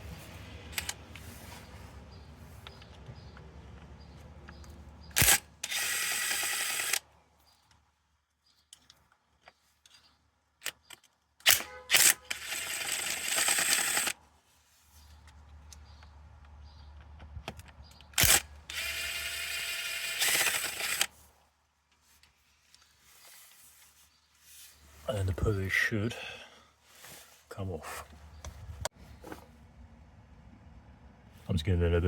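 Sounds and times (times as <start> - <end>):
cordless power tool whirring: 5.1 - 7.0, 11.5 - 14.2, 18.2 - 21.1
sharp clicks: 15.7 - 21.1.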